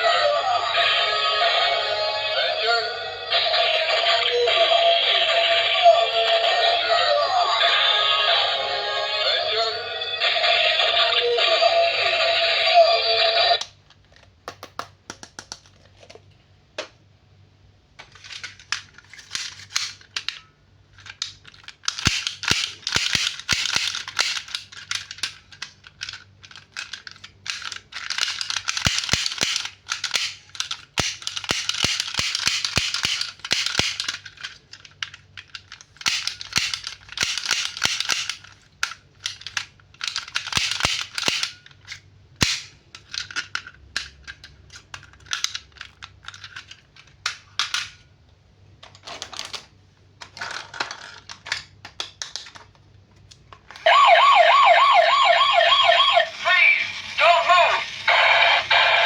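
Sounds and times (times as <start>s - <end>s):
sharp clicks and snaps: 13.6s - 15.8s.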